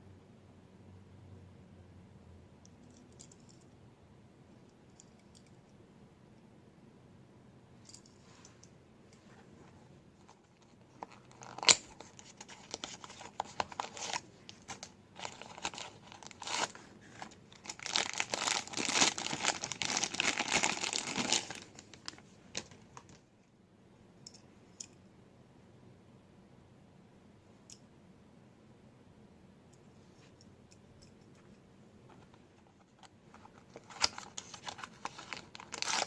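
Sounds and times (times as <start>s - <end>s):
packaging tearing and crinkling: 11.0s - 22.7s, 33.0s - 36.0s.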